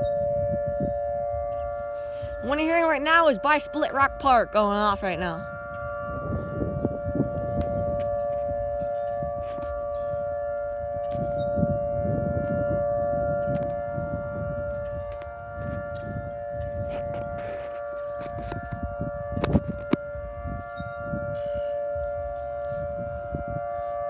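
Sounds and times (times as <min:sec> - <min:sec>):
tornado warning siren wailing: 0:00.0 - 0:24.0.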